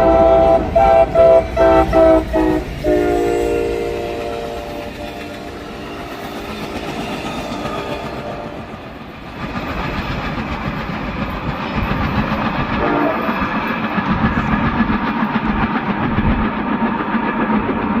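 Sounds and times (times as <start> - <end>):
train engine and wheel noise: 0.0 - 18.0
short train horn tap: 12.8 - 13.3.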